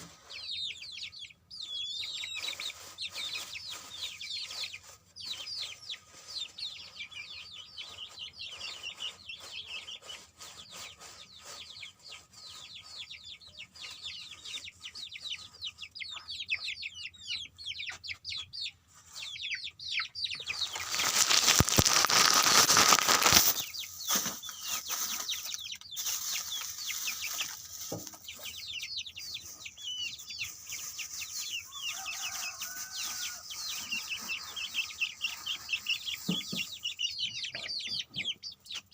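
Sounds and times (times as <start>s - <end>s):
chicks peeping: 0.0s - 38.9s
loud rustling: 20.6s - 25.4s.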